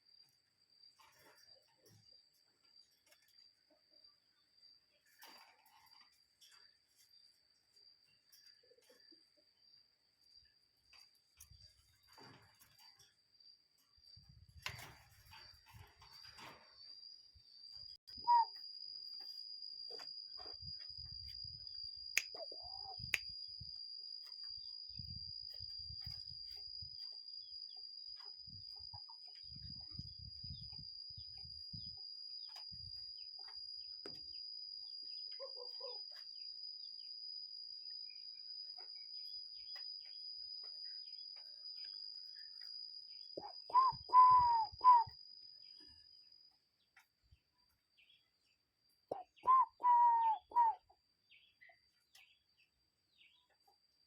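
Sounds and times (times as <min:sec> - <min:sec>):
cuckoo calling: 0:18.1 - 0:18.6, 0:22.2 - 0:23.2, 0:43.4 - 0:45.2, 0:49.1 - 0:51.0.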